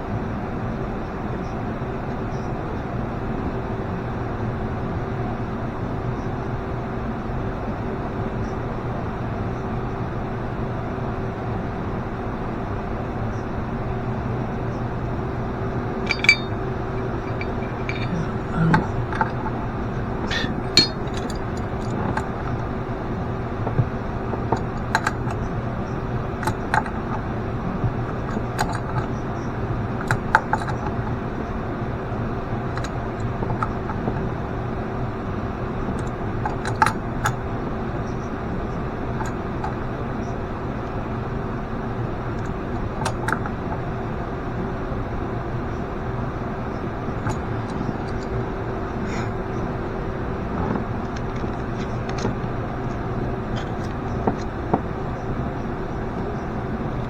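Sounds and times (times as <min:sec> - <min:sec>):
steady mechanical hum: 0:00.0 - 0:57.0
light metallic clicks and clinks: 0:16.0 - 0:19.6, 0:20.3 - 0:22.6.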